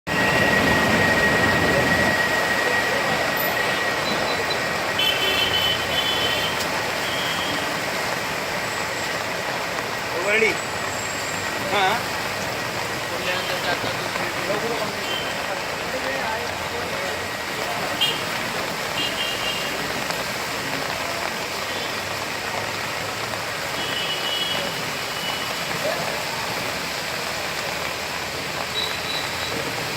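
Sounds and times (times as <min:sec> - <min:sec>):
heavy rain: 0:00.0 - 0:29.9
railway station din: 0:00.1 - 0:29.9.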